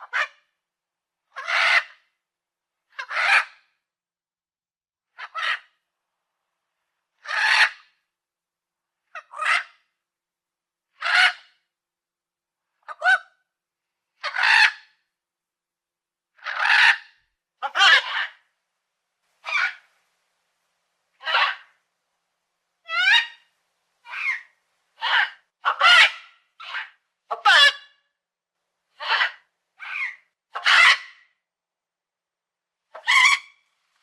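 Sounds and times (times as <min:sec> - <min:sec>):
parrot squawking: 0:01.4 - 0:01.9, 0:07.3 - 0:07.8, 0:16.4 - 0:17.0, 0:17.6 - 0:18.4, 0:19.4 - 0:19.8, 0:21.2 - 0:21.7, 0:22.8 - 0:23.4, 0:24.0 - 0:27.8, 0:29.0 - 0:31.2, 0:33.0 - 0:33.5.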